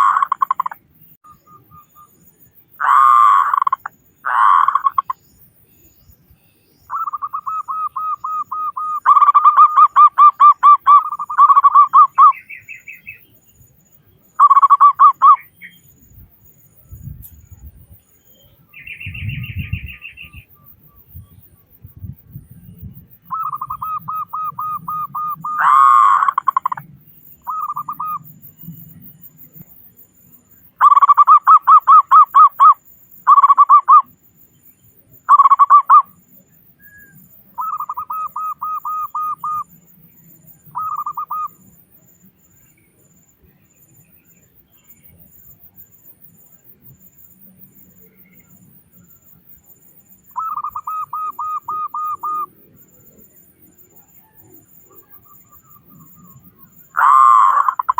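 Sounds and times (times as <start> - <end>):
dove cooing: 0.0 - 0.8, 2.8 - 5.2, 6.9 - 12.4, 14.4 - 15.4, 23.3 - 26.9, 27.5 - 28.3, 35.3 - 36.1, 40.8 - 41.6, 50.4 - 52.5, 54.2 - 57.9.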